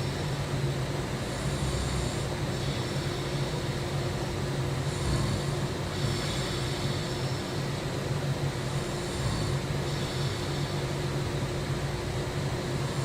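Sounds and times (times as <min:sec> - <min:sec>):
person snoring: 0:01.3 - 0:03.4, 0:04.8 - 0:07.4, 0:08.7 - 0:10.8.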